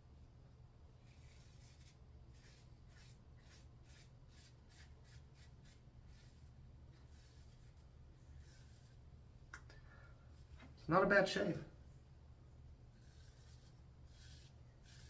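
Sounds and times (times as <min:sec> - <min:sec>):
low steady hum: 0:00.0 - 0:15.0
razor scraping stubble: 0:01.0 - 0:09.1, 0:12.9 - 0:15.0.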